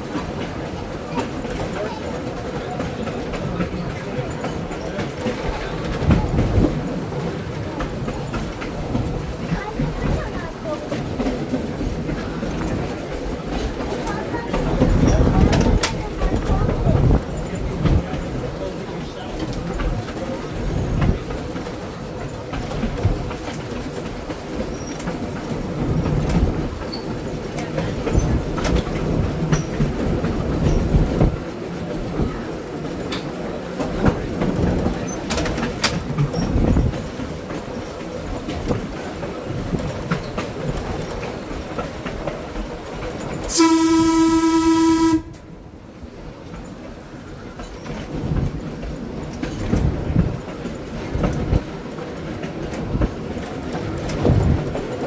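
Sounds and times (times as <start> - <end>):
wheels clicking over rail joints: 0.0 - 45.6
trolley car rumbling on track: 0.0 - 55.0
trolley horn steady tone: 43.5 - 45.6.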